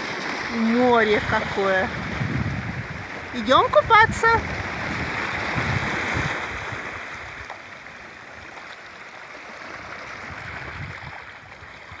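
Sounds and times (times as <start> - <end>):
sea waves washing onto shore: 0.0 - 12.0.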